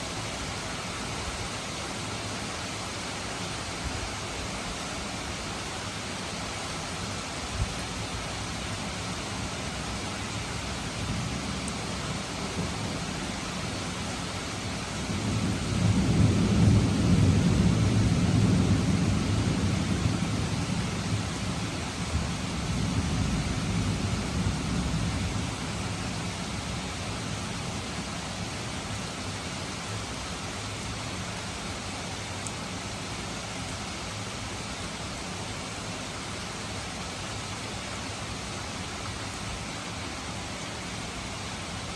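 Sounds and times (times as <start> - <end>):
steady rain: 0.0 - 41.9
thunder rumbling: 10.9 - 27.8.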